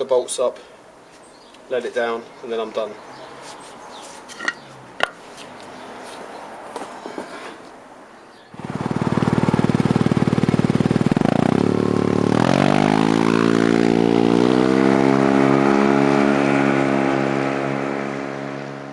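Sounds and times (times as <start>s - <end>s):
engine running and revving: 8.6s - 18.9s.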